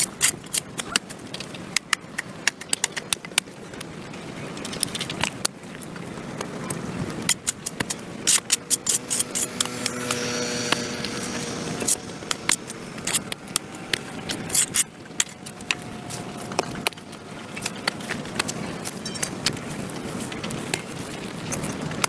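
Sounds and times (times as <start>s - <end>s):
hand tool scraping concrete: 7.3s - 16.9s.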